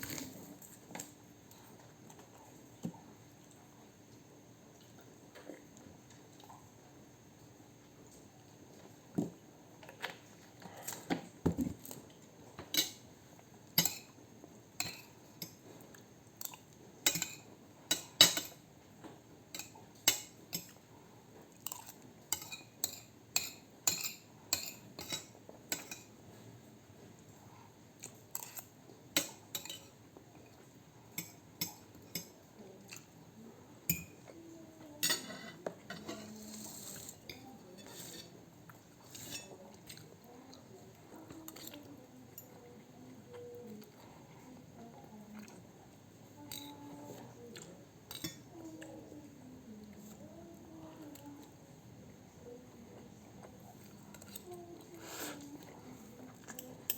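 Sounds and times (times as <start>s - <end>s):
cutlery clinking against a plate: 12.6s - 13.0s, 13.7s - 14.2s, 14.8s - 15.6s, 16.4s - 18.7s, 19.5s - 20.8s, 21.6s - 26.1s, 28.0s - 30.0s, 31.1s - 33.1s, 33.9s - 34.2s, 35.0s - 38.3s, 39.0s - 40.0s, 48.1s - 48.5s.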